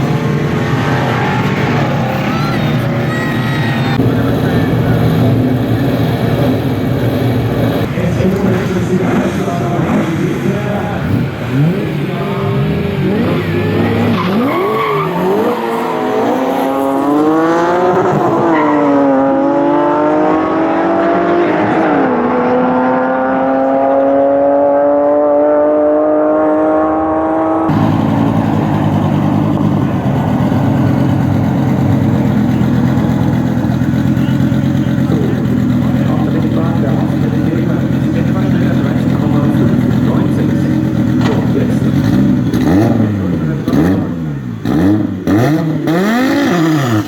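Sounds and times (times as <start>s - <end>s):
rough engine rumble: 0.0s - 14.4s, 27.7s - 45.9s
drag racing engine accelerating: 0.0s - 47.0s.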